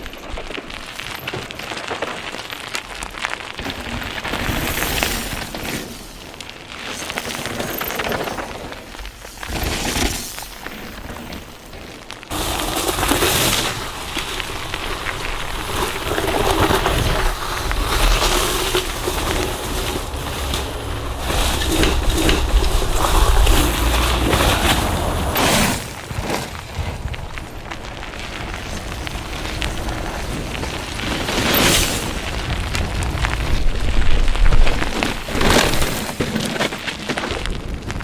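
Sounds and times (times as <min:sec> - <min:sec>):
bike rattling over rough ground: 0:00.0 - 0:38.0
low rumble: 0:14.0 - 0:25.6.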